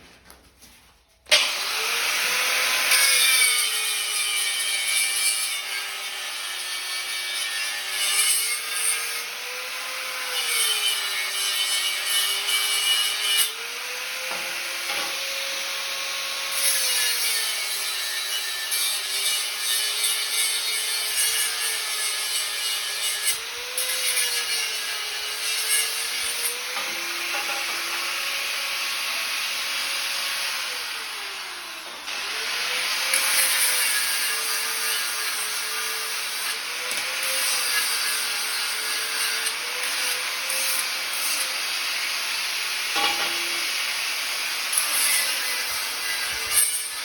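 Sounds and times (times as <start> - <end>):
power tool motor whine: 1.3 - 2.9.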